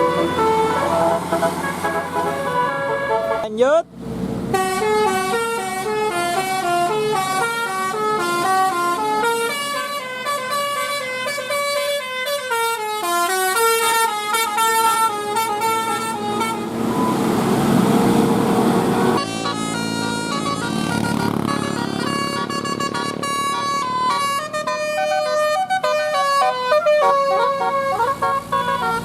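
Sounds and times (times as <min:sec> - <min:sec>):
musical air horn melody: 0:00.0 - 0:03.6, 0:04.5 - 0:17.2, 0:18.8 - 0:29.0
steady rushing noise: 0:15.8 - 0:19.3.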